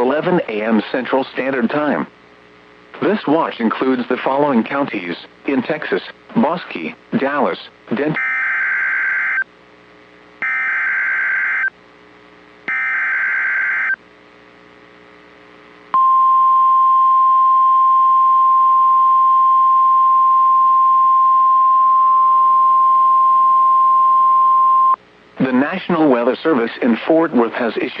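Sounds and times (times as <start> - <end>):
steady alarm tone: 8.2 - 9.4, 10.4 - 11.7, 12.7 - 14.0.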